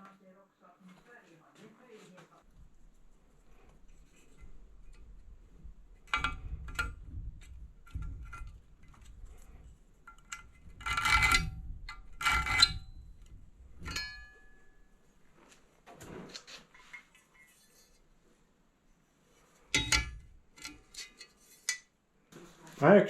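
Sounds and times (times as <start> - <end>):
steel pieces clanking: 6.0 - 14.8, 19.7 - 21.9.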